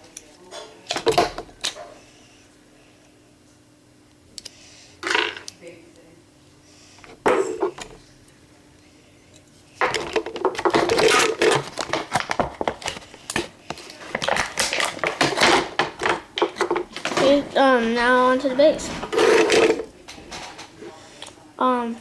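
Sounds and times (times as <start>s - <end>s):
plastic parts clicking and rattling: 9.8s - 17.5s, 19.0s - 20.7s.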